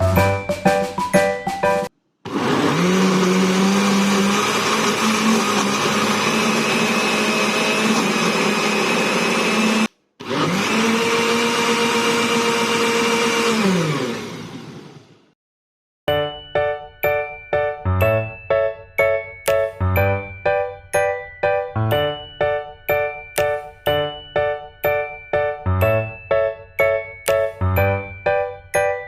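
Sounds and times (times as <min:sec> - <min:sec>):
blender motor running: 0:02.3 - 0:15.4.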